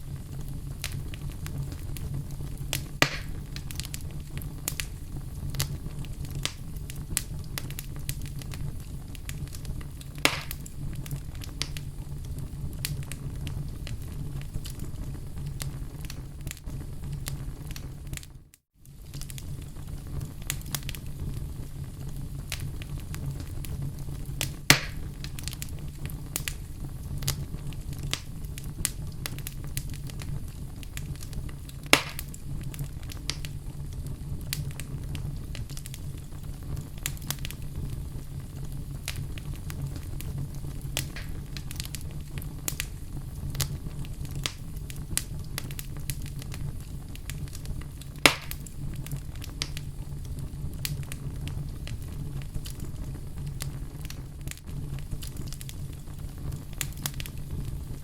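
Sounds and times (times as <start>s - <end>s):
fire popping: 0.0s - 58.0s
low fire rumble: 0.0s - 58.0s
wood fire crackling: 0.0s - 58.0s.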